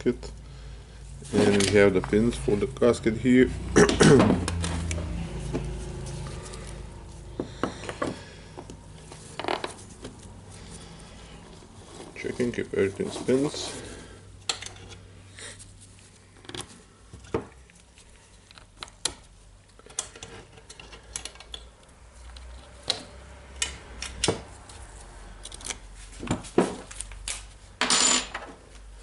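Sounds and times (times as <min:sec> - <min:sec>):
small metal parts clicking: 0:18.4 - 0:23.0, 0:25.4 - 0:25.8.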